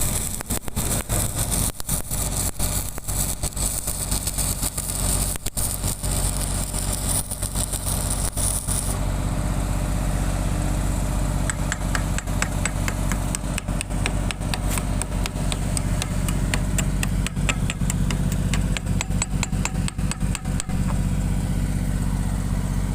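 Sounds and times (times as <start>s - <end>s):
high hiss of welding arc: 0.0s - 9.0s, 11.6s - 21.2s
generator engine running: 0.0s - 22.9s
sharp taps: 11.5s - 21.0s.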